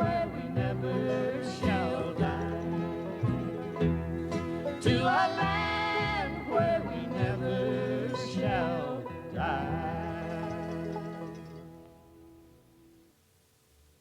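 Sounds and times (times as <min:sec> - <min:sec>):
person singing: 0:00.0 - 0:03.4, 0:04.8 - 0:11.6
string accompaniment: 0:00.0 - 0:13.0.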